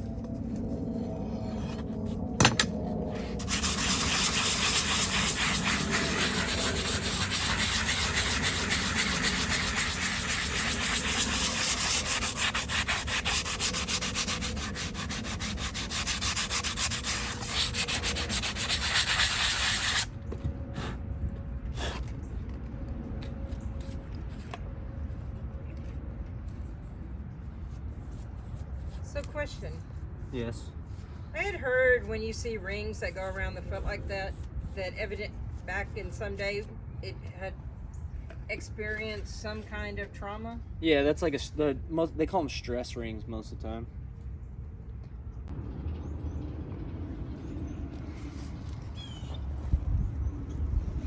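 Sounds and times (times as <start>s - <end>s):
hoof being filed: 0.1s - 20.1s.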